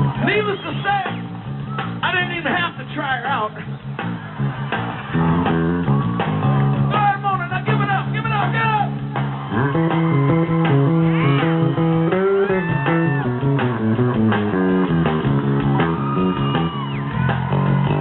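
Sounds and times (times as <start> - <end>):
electric bass line: 0.0 - 18.0
electric guitar bent notes: 3.8 - 7.0, 8.9 - 18.0.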